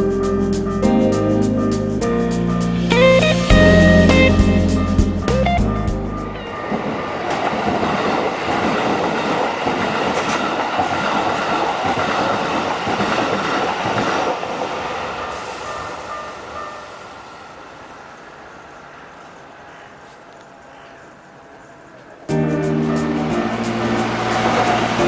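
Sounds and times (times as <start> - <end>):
train wheels rumbling on rails: 3.0 - 18.3, 22.4 - 25.0.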